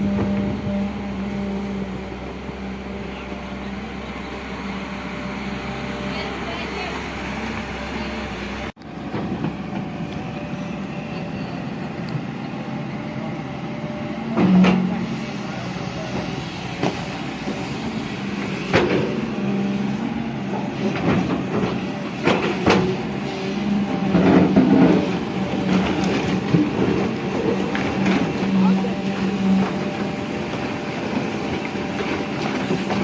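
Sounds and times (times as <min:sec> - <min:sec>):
excavator diesel engine running: 0:00.0 - 0:33.0.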